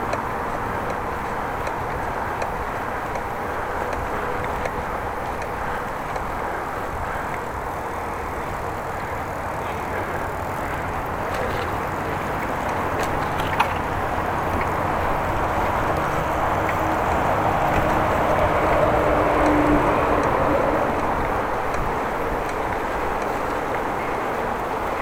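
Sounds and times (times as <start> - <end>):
bicycle tyres and rushing air: 0.0 - 25.0
sharp ticks: 14.5 - 25.0.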